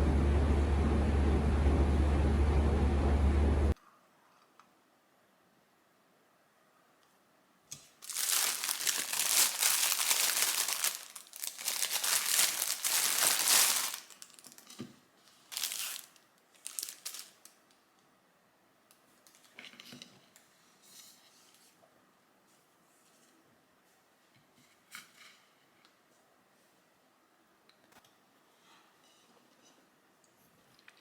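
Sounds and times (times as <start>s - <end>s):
packaging crinkling: 8.0s - 17.7s.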